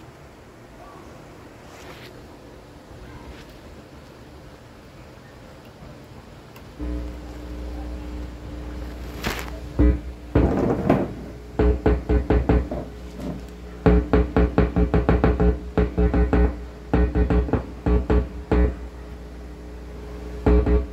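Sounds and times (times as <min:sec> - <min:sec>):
bass: 0:06.8 - 0:20.9.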